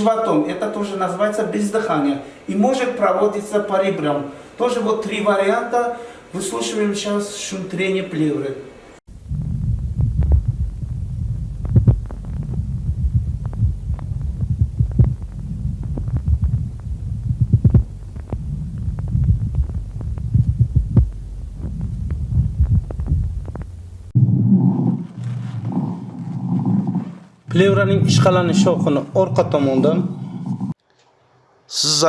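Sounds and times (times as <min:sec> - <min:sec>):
low body rumble: 0:09.1 - 0:24.2
crackling creaks through stethoscope: 0:09.8 - 0:24.1.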